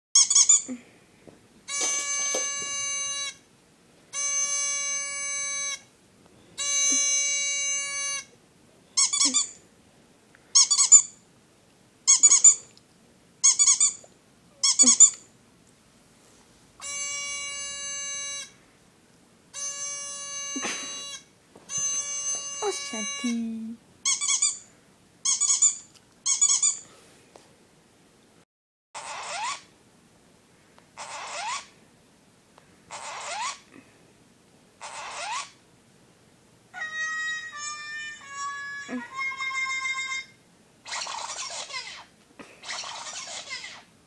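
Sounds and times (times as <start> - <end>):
long steady pitched tones: 1.6 - 3.4, 4.1 - 8.4, 16.8 - 18.8, 19.5 - 23.8, 36.7 - 40.4
short high squeaks: 25.3 - 26.8, 29.0 - 29.7, 31.0 - 31.7, 34.8 - 35.6, 36.8 - 42.0.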